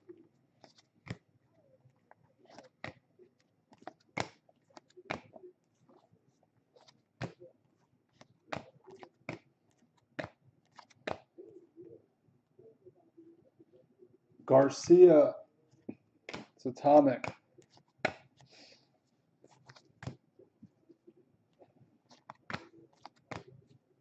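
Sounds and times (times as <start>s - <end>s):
faint card rustling: 0.0s - 12.0s, 15.7s - 23.9s
trading cards clicking and snapping: 0.6s - 1.2s, 2.5s - 3.0s, 3.7s - 6.0s, 8.2s - 11.3s, 15.9s - 18.6s, 22.1s - 23.6s.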